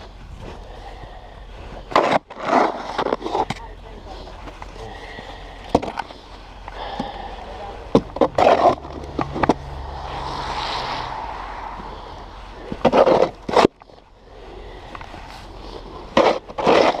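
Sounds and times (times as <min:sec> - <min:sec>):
steady low rumble: 0:00.0 - 0:01.9, 0:02.7 - 0:16.6
snow shovel scraping pavement: 0:01.9 - 0:03.5, 0:07.6 - 0:14.0, 0:14.8 - 0:17.0.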